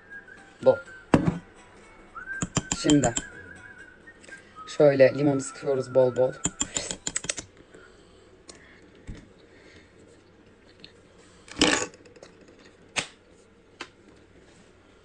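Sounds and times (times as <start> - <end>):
faint eating clicks and taps: 2.4 - 3.3, 6.4 - 7.8, 8.4 - 11.0.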